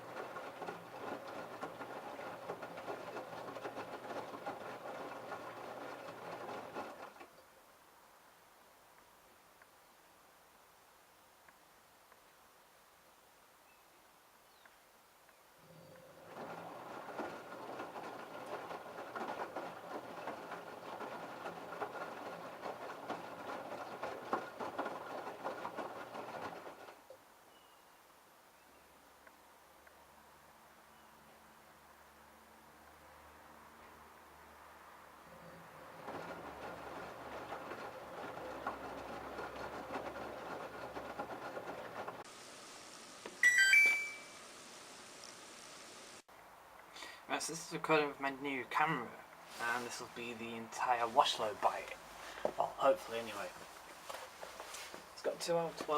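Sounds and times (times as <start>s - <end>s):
washing machine motor hum: 0.0s - 7.3s, 15.8s - 27.1s, 35.3s - 46.2s
wet laundry and water tumbling: 0.0s - 7.4s, 15.9s - 27.2s, 35.2s - 43.1s, 49.4s - 55.9s
rising electronic beep: 43.4s - 44.4s.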